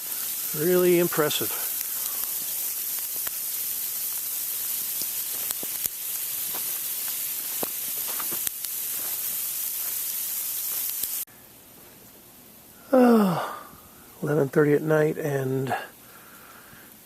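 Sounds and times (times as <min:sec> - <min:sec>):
sleet hissing: 0:00.0 - 0:11.3
ice pellets ticking on hard surfaces: 0:00.1 - 0:11.2.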